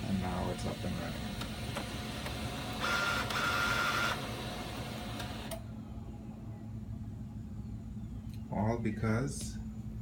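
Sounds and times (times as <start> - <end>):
laser printer mechanism running: 0.0 - 5.7.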